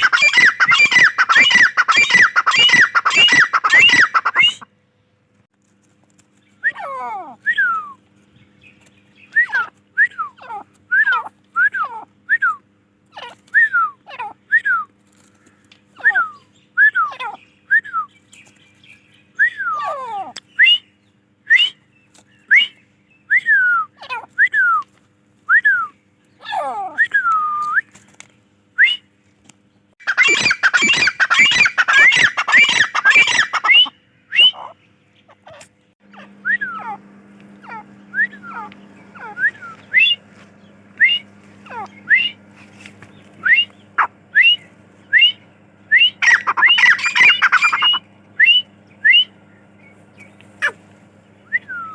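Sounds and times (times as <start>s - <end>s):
francolin whistled calls: 0.0s - 4.6s, 30.1s - 34.8s, 36.2s - 37.0s, 37.6s - 40.3s, 41.0s - 42.4s, 43.4s - 49.4s.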